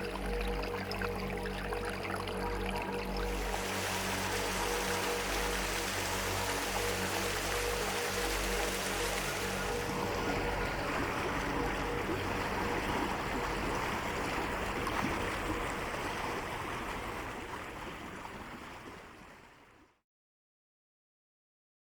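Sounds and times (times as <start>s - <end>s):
stream rushing and gurgling: 0.0s - 19.6s.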